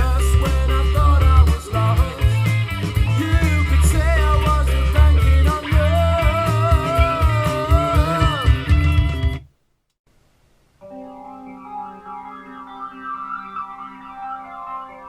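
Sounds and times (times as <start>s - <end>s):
electric guitar: 0.0s - 9.5s, 10.8s - 15.0s
heavy pulsing bass line: 0.0s - 9.5s
rock music: 0.0s - 9.5s, 10.9s - 15.0s
wavering melody line: 10.8s - 15.0s.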